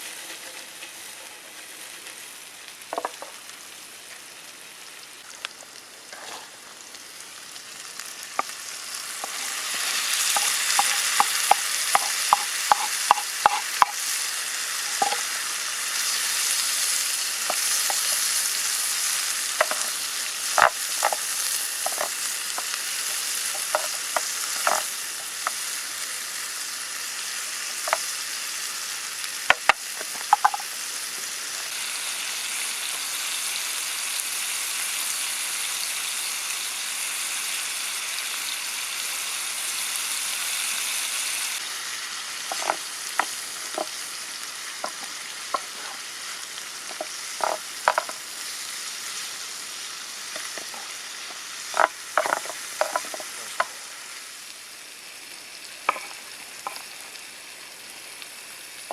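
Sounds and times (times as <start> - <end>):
vegetables sizzling in butter: 0.0 - 58.9
utensil clicking against pan: 10.2 - 14.0, 19.6 - 19.9, 20.6 - 22.8, 23.4 - 25.6, 29.5 - 30.7, 46.9 - 48.2, 51.8 - 53.7.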